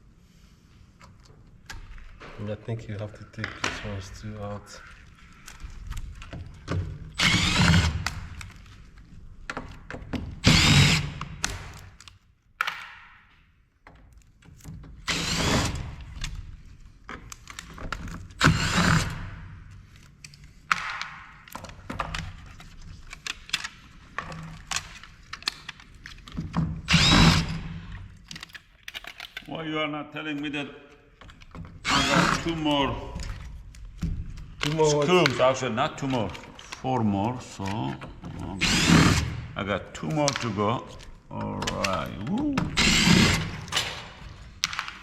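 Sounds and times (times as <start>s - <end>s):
power screwdriver whining: 7.1s - 8.5s, 10.4s - 11.8s, 15.0s - 16.2s, 18.3s - 19.2s, 26.8s - 28.0s, 31.7s - 32.9s, 38.3s - 39.4s, 42.6s - 44.0s
parts clicking and knocking: 19.7s - 29.5s.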